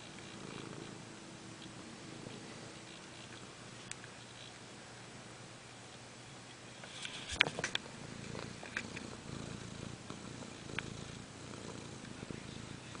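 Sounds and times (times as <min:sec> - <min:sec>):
cat snoring: 0:00.0 - 0:01.1, 0:02.0 - 0:03.6, 0:07.9 - 0:13.0.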